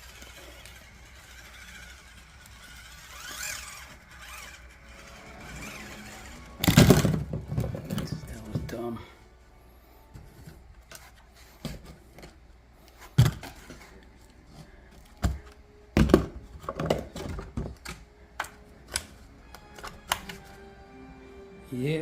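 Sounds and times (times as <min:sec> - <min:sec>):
loud thumps: 0:06.6 - 0:08.4.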